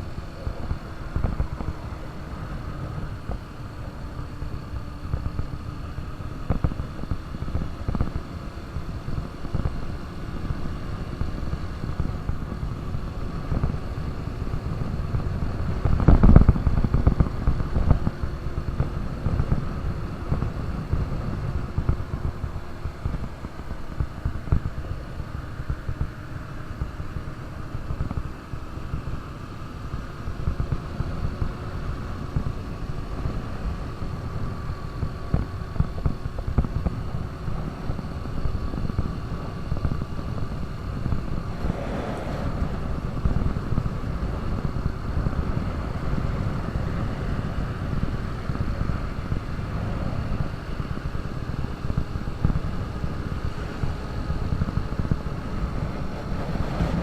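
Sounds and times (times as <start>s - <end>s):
motorcycle engine running: 0.0s - 57.0s
low rumble: 32.3s - 57.0s
rush of noise: 36.6s - 57.0s.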